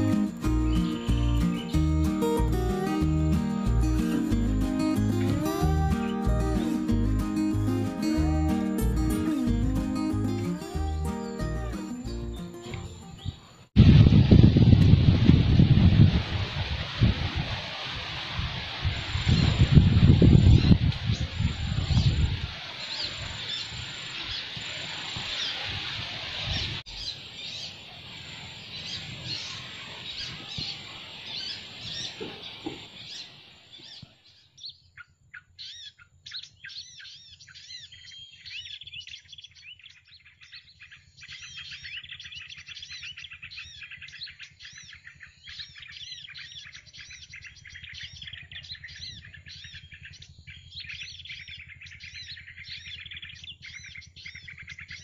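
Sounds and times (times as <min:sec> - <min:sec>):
broad hiss: 0:00.0 - 0:11.9, 0:13.8 - 0:27.6
small birds chirping: 0:00.0 - 0:13.8, 0:20.4 - 0:55.0.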